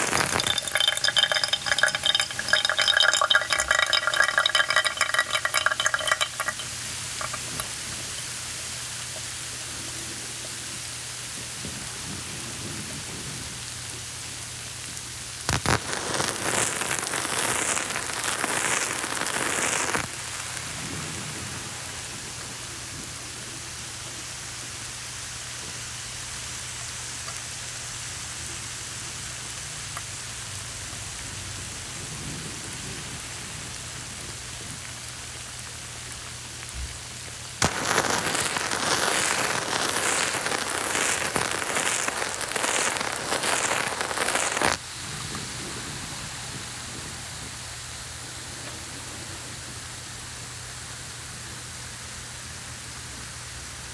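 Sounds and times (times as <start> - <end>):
hot water poured onto coffee: 0.0 - 8.5, 15.4 - 22.5, 37.6 - 45.0.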